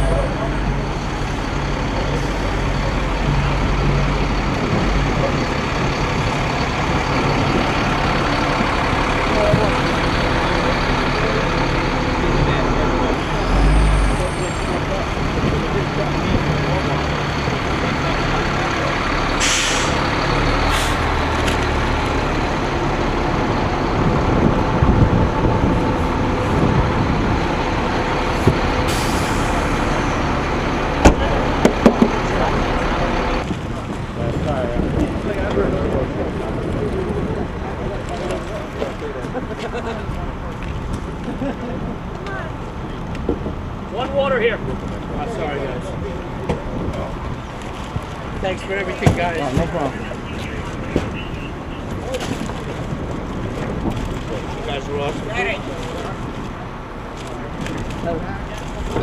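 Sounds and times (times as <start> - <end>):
vehicle engine idling: 0.0 - 59.0
short air hisses: 19.4 - 20.0.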